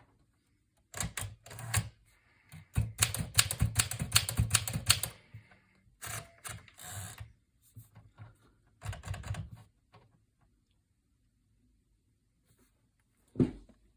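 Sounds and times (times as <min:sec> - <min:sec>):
typewriter clicks and clatter: 0:02.7 - 0:05.2.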